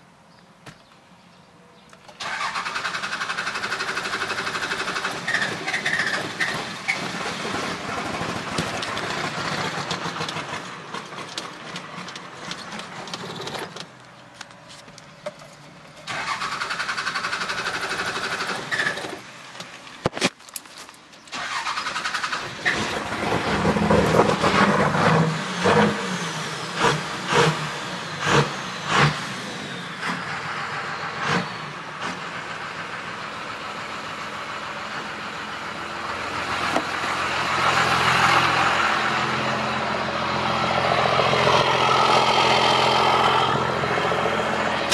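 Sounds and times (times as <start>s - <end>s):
diesel engine firing and running: 2.0s - 13.9s, 16.0s - 19.5s, 21.3s - 44.9s
starter cranking diesel engine: 2.0s - 14.0s, 15.9s - 19.3s, 21.3s - 44.9s.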